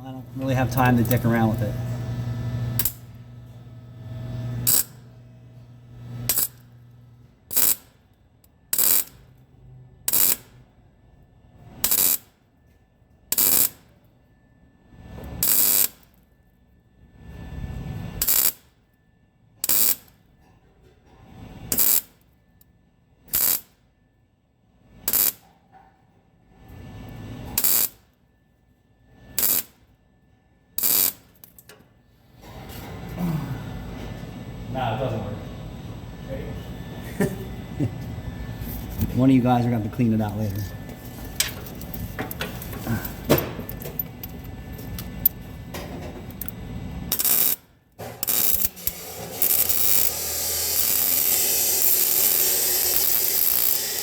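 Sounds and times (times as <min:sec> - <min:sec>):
low hum: 0:00.0 - 0:07.5
sharp metallic tool bursts: 0:06.3 - 0:06.6, 0:30.8 - 0:31.2, 0:47.1 - 0:54.0.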